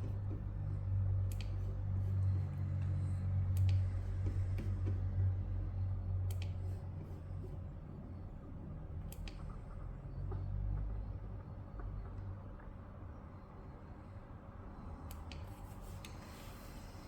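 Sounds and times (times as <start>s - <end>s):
low wavering hum: 0.0s - 12.4s.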